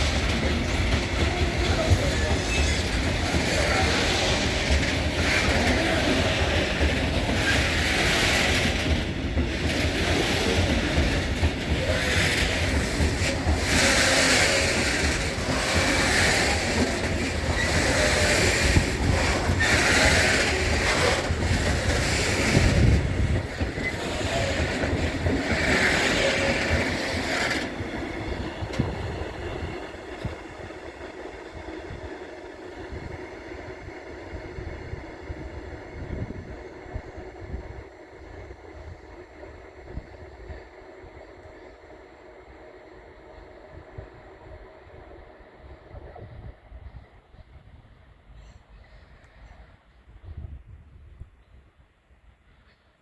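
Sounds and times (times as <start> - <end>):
wheel-on-rail clatter: 0.0 - 27.8
freight train rumbling past: 0.0 - 51.3.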